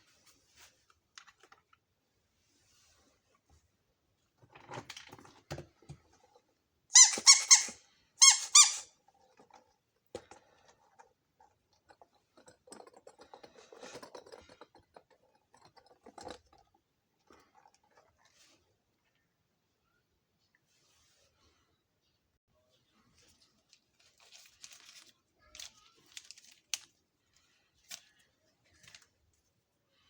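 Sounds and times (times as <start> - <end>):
high squeaking: 6.9 - 8.9
rustling: 22.7 - 30.0.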